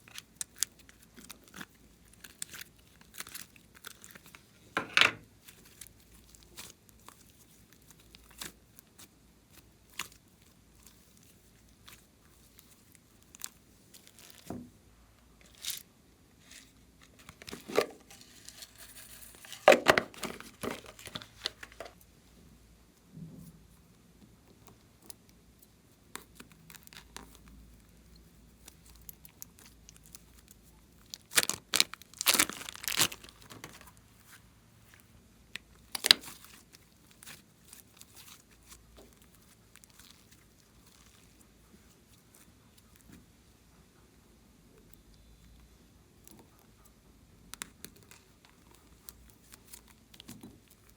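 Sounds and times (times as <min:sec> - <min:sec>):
slime crackling and popping: 0:00.0 - 0:04.4, 0:05.4 - 0:14.5, 0:24.6 - 0:34.1, 0:35.5 - 0:43.1, 0:47.5 - 0:50.9.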